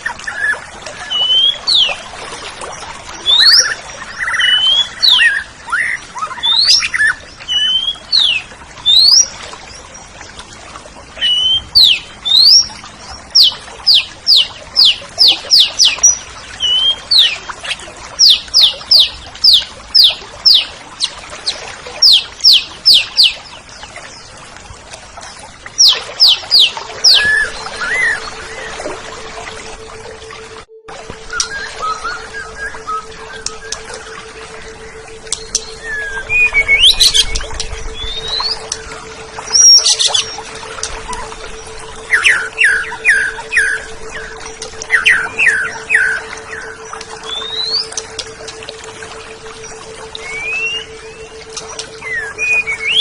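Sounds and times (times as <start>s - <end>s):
bird singing whistles: 25.8s - 28.8s, 31.2s - 38.8s, 41.0s - 48.3s, 49.7s - 53.0s.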